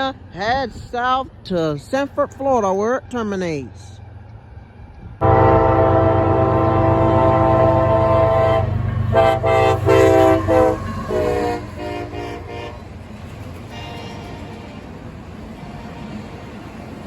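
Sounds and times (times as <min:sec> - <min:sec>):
passing train rumble: 0:00.0 - 0:17.0
locomotive air horn blasts: 0:05.2 - 0:12.9.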